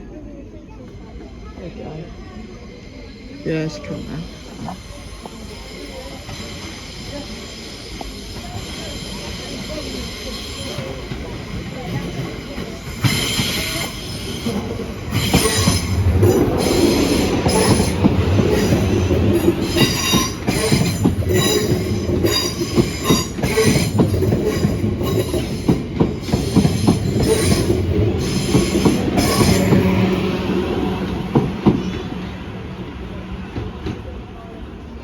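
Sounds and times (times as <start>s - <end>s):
train rumbling past: 0.0s - 35.0s
wheels squealing against rails: 0.4s - 32.5s.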